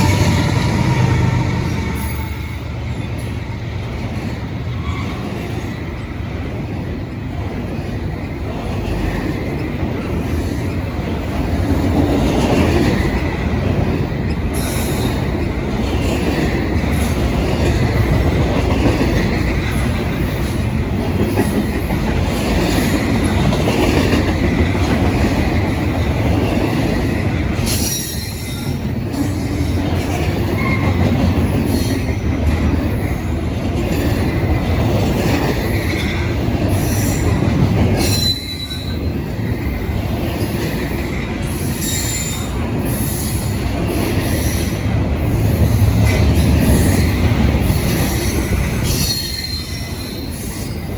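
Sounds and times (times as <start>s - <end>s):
train wheels rumbling on rail: 0.0s - 50.9s
high-pitched wheel squeals: 38.0s - 39.1s, 48.8s - 50.9s.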